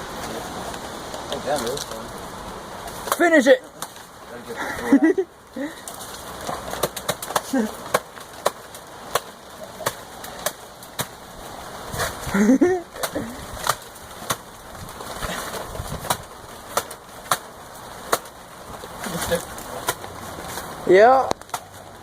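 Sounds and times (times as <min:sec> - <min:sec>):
chopping into tree trunk: 0:05.9 - 0:11.2, 0:13.0 - 0:18.4, 0:19.0 - 0:20.7.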